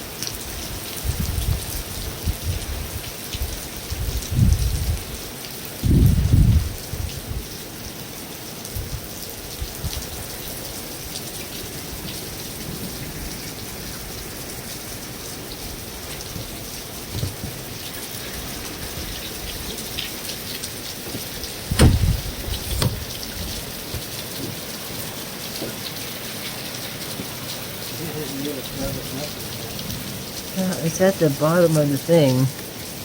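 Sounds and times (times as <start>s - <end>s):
rain on a metal roof: 0.0s - 33.0s
loud short thump: 21.7s - 23.0s.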